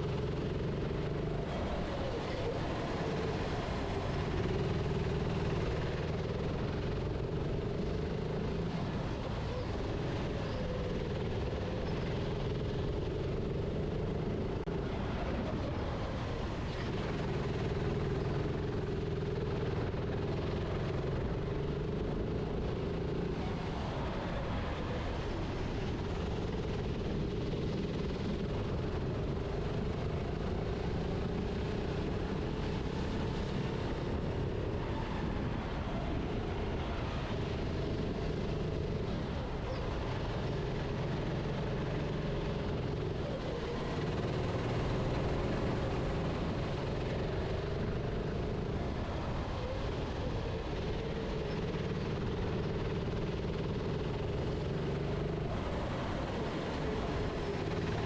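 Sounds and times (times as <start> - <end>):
steady rushing noise: 0.0 - 58.0
kart engine revving: 15.4 - 58.0.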